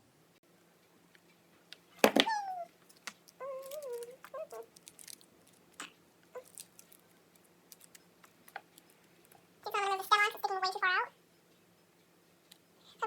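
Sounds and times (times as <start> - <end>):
dry leaves crackling: 3.2 - 9.8.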